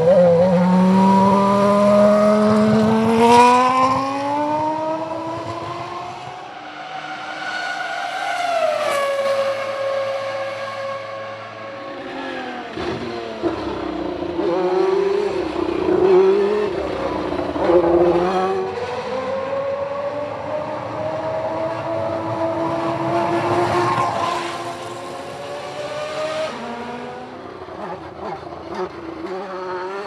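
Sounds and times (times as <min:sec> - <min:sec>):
racing car engine at high revs: 0:00.0 - 0:30.0.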